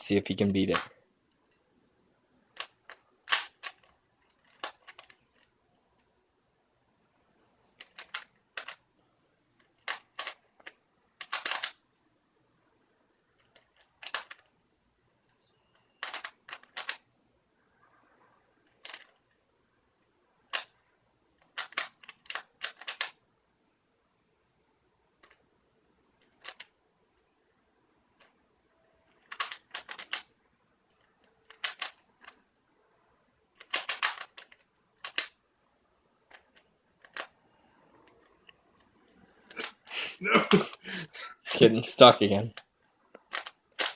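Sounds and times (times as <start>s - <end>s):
plastic cube clicks and clacks: 0.5s - 1.6s, 2.5s - 6.1s, 7.6s - 8.9s, 9.5s - 11.9s, 13.3s - 14.6s, 15.3s - 17.1s, 18.6s - 19.3s, 20.0s - 20.8s, 21.4s - 23.2s, 25.2s - 25.5s, 26.2s - 27.2s, 28.1s - 28.4s, 29.0s - 30.3s, 30.9s - 32.5s, 33.5s - 35.4s, 36.2s - 40.0s, 42.5s - 43.9s.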